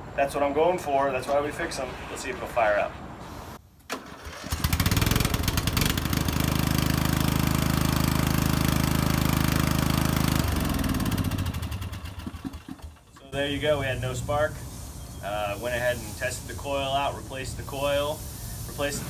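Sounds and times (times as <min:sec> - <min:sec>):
engine winding down: 0:04.0 - 0:14.7
riding mower engine running: 0:04.0 - 0:14.8.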